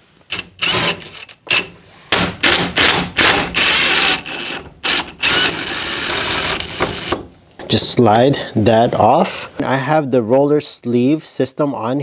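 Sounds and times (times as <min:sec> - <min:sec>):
impact driver bursts: 0:00.3 - 0:07.2.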